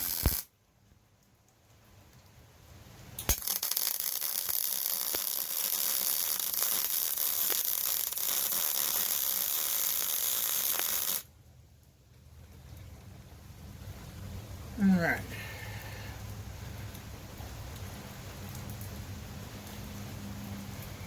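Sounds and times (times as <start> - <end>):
welding arc crackling: 0.0 - 0.5, 3.2 - 11.3.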